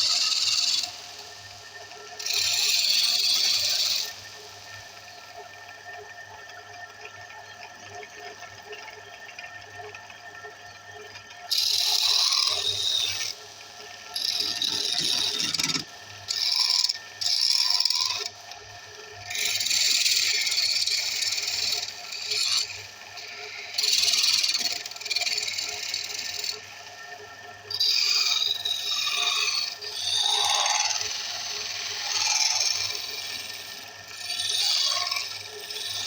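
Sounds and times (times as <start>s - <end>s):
wood lathe motor humming: 0.0s - 1.4s, 2.2s - 4.4s, 14.2s - 18.3s, 19.3s - 26.6s, 27.8s - 36.0s
turning tool scraping wood: 14.2s - 18.2s.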